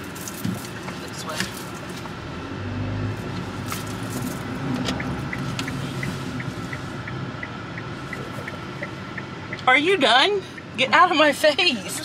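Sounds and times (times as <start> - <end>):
turn signal ticking: 3.2 - 12.0.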